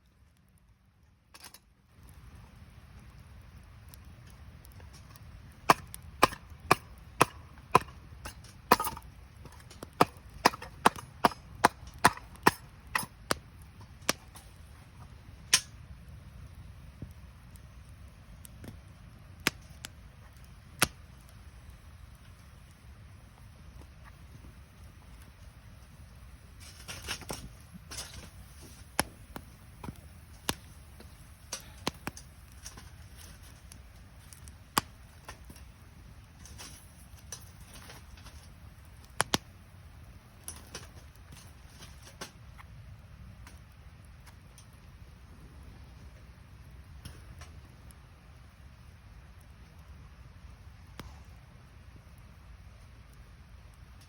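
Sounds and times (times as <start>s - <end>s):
campfire crackling: 0.0s - 54.0s
low rumble of flame: 0.0s - 54.0s
sharp wooden cracks: 4.8s - 14.6s, 15.4s - 15.8s, 18.4s - 21.3s
sharp pops of wood: 5.0s - 14.6s, 26.6s - 38.4s, 39.0s - 39.5s.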